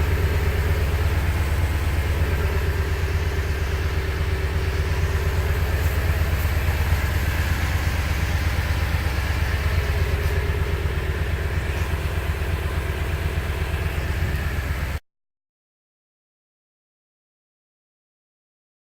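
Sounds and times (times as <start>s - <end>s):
engine idling through exhaust: 0.0s - 15.0s.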